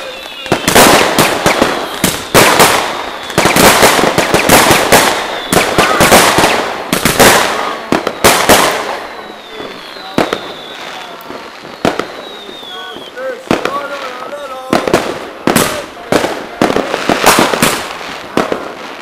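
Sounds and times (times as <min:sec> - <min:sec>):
high falling whistle: 0:00.0 - 0:06.6, 0:08.0 - 0:13.3
fireworks and firecrackers banging: 0:00.0 - 0:19.0.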